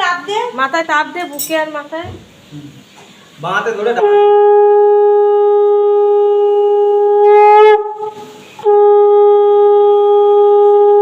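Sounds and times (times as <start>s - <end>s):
conch shell blasts: 4.0s - 11.0s.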